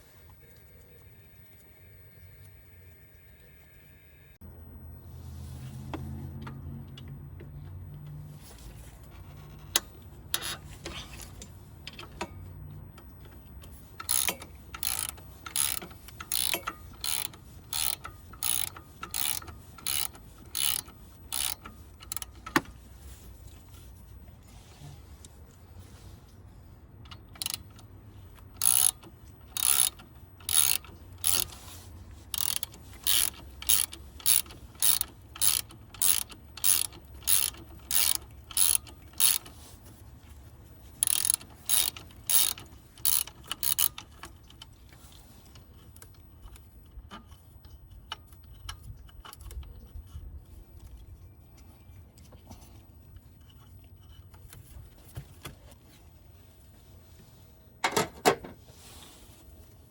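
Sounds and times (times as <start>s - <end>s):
ratchet wrench clicking: 9.4s - 11.4s, 13.9s - 22.6s, 27.1s - 39.6s, 41.0s - 44.4s.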